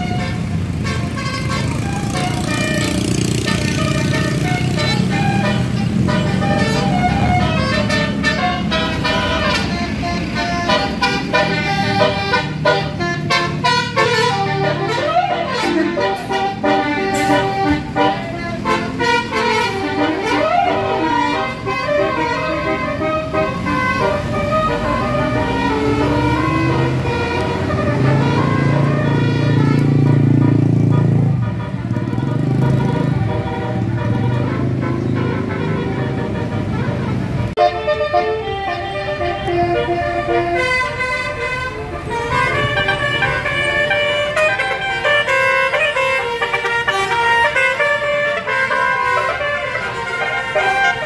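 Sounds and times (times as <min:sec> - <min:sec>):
bus engine running: 0:00.0 - 0:51.0
multi-tone air horns playing tune: 0:00.0 - 0:51.0.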